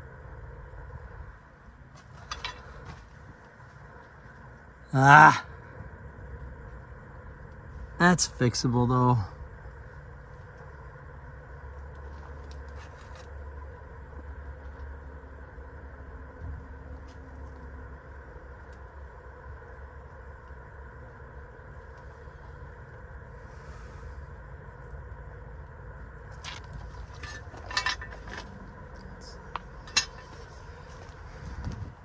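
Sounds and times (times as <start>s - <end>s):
engine humming with low rumble: 0.0s - 32.0s.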